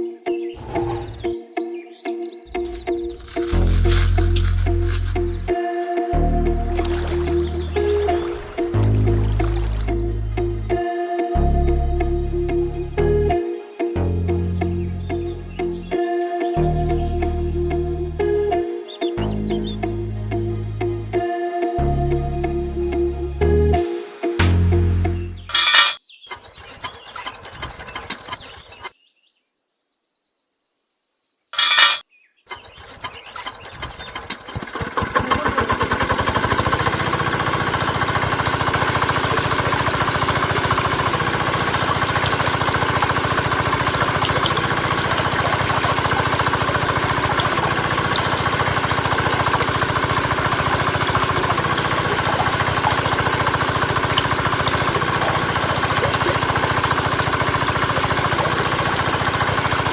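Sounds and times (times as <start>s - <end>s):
small engine starting up: 0.6s - 1.4s, 2.5s - 10.6s, 23.8s - 29.0s, 31.6s - 59.9s
sharp click: 23.8s - 26.0s, 31.6s - 32.0s.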